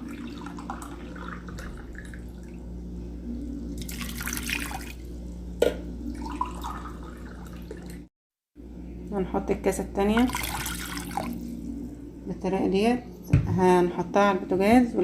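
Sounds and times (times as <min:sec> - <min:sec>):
water pouring into a pot: 0:03.8 - 0:05.0, 0:06.1 - 0:08.0, 0:10.3 - 0:11.4.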